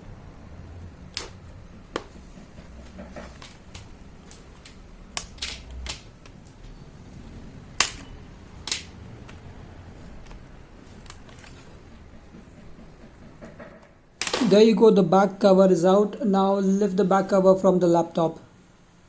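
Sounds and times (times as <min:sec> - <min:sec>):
plastic clips snapping free: 0:01.1 - 0:01.4, 0:03.4 - 0:06.4, 0:07.8 - 0:09.4, 0:14.2 - 0:14.6
sharp clicks: 0:03.4 - 0:06.6, 0:07.8 - 0:09.4, 0:14.2 - 0:14.6.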